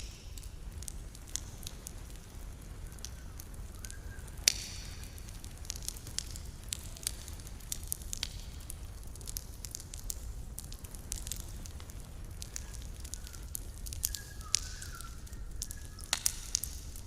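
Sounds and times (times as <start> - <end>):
campfire crackling and popping: 0.0 - 17.0
low burning rumble: 0.0 - 17.0.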